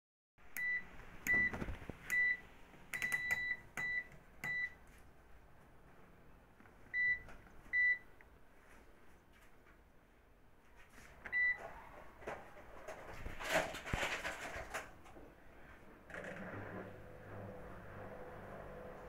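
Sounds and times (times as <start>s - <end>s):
washing machine panel beeping: 0.5s - 4.8s, 6.9s - 8.1s, 11.3s - 11.6s.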